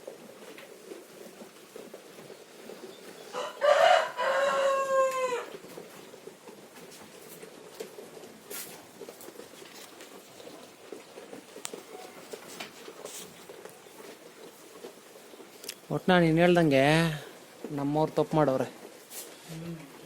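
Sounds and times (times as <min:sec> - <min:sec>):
faint ticks and rustles: 0:00.0 - 0:20.0
rooster crowing: 0:03.3 - 0:05.6.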